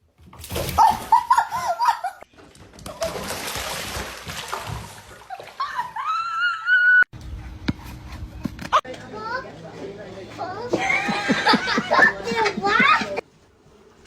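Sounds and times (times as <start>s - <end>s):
water splashing: 2.3s - 6.1s.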